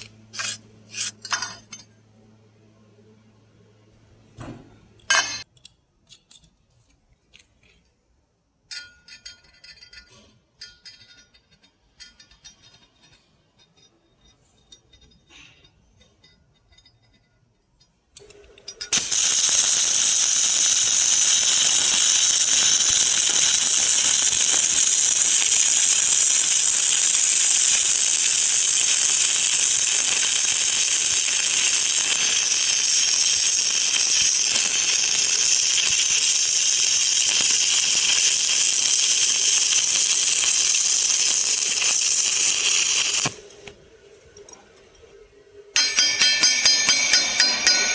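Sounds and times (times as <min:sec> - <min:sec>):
arc welding crackling hiss: 0:18.8 - 0:43.8.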